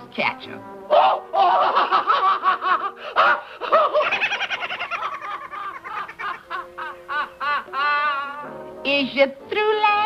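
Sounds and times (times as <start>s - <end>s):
cartoon cat laughing: 3.6s - 8.4s.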